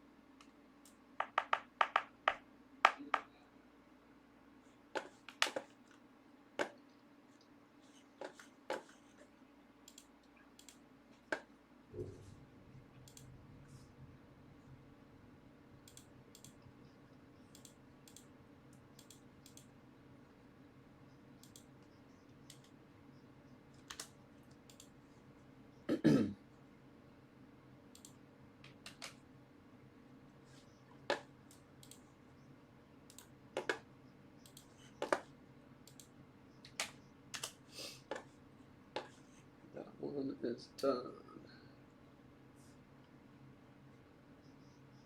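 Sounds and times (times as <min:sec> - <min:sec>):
faint steady hum: 0:00.0 - 0:45.0
person clearing throat: 0:25.9 - 0:26.4.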